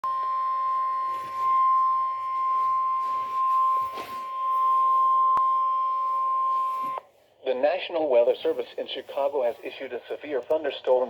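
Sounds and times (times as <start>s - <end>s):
steady high alarm tone: 0.0s - 7.1s.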